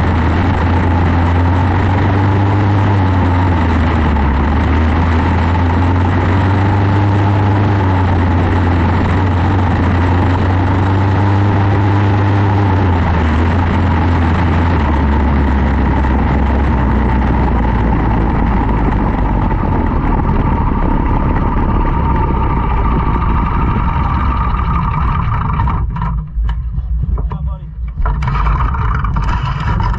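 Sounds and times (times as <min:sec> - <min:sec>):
race car engine running loudly: 0:00.0 - 0:29.9.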